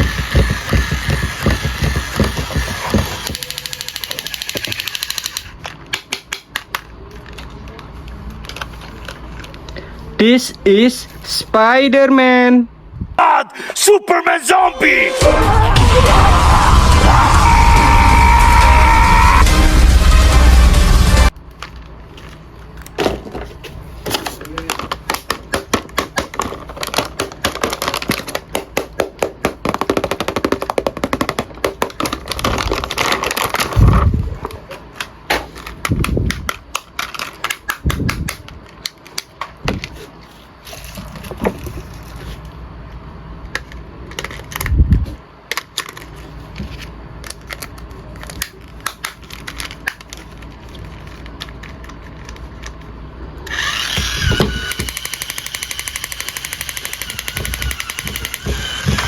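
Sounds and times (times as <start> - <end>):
knocks and thumps: 0.0 - 3.4, 24.9 - 32.8.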